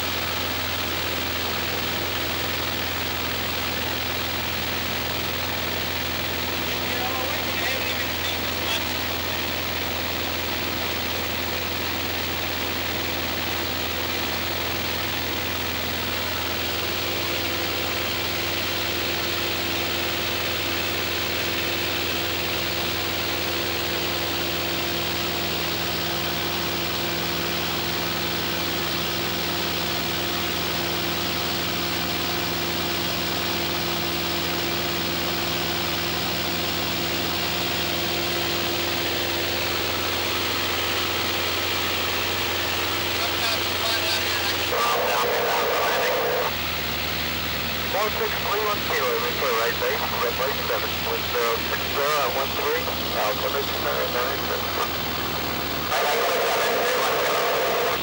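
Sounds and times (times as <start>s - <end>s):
steady hum: 0.0s - 23.8s, 37.1s - 58.0s
propeller plane engine drone: 0.0s - 58.0s.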